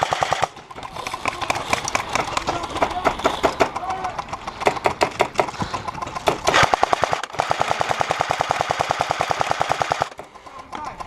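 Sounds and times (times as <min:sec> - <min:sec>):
airsoft gun firing full auto: 0:00.0 - 0:11.0.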